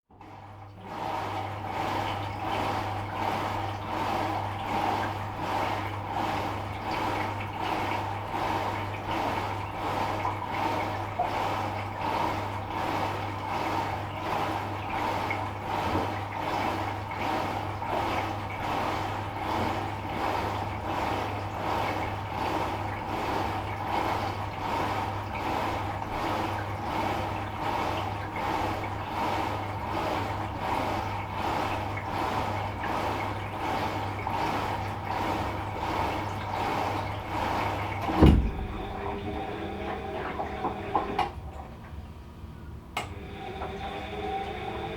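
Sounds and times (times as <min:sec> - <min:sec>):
washing machine running: 0:00.1 - 0:44.9
loud thump: 0:38.1 - 0:38.9.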